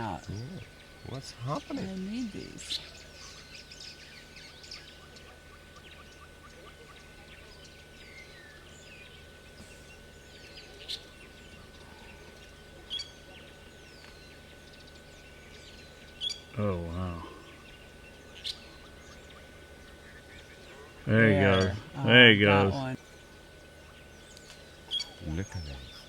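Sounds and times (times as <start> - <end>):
birds chirping and whistling: 0.0 - 16.5, 22.7 - 26.0
faint steady whine and hum: 0.0 - 26.0.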